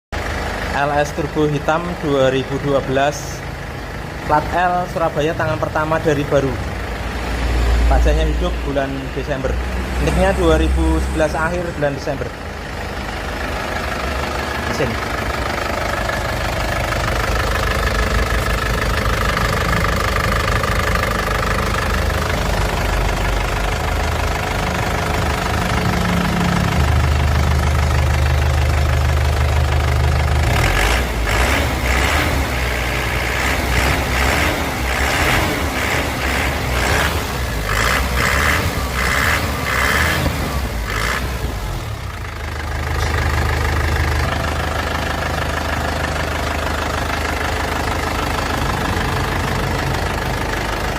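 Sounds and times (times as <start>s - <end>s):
diesel engine idling and revving: 0.1s - 50.9s.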